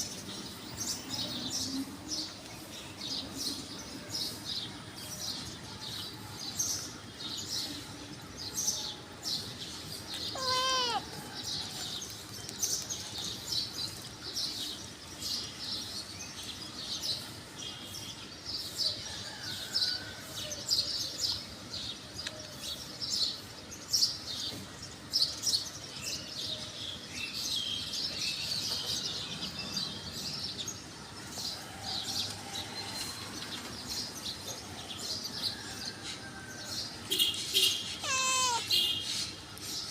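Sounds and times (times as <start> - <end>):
small birds chirping: 9.2 - 18.2, 37.1 - 39.9.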